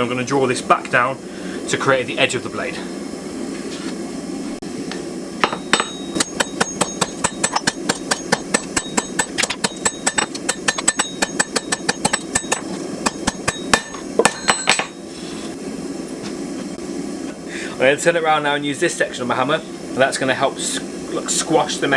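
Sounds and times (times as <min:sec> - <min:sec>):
hammer striking steel on anvil: 0:05.4 - 0:15.0.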